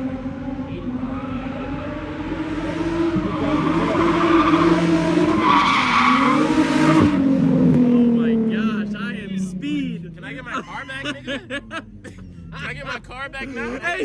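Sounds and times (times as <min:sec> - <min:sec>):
car engine revving: 0:00.0 - 0:14.0
tyres squealing: 0:03.2 - 0:07.0.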